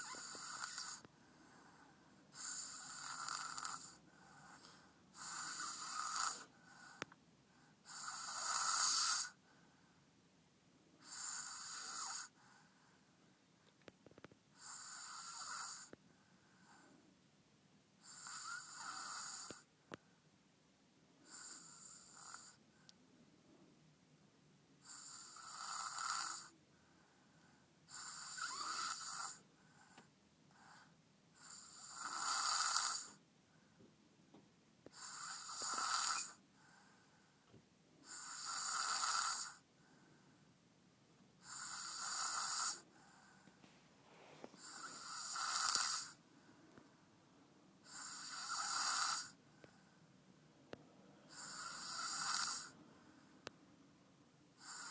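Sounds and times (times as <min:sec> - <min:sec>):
deep breathy snoring: 0:00.0 - 0:07.1, 0:07.8 - 0:09.4, 0:11.0 - 0:12.4, 0:14.6 - 0:16.0, 0:18.0 - 0:19.7, 0:21.2 - 0:22.6, 0:24.8 - 0:26.6, 0:27.9 - 0:30.0, 0:30.6 - 0:33.2, 0:34.9 - 0:37.1, 0:38.0 - 0:40.1, 0:41.4 - 0:43.5, 0:44.2 - 0:46.2, 0:47.8 - 0:50.0, 0:51.3 - 0:53.1, 0:54.6 - 0:54.9.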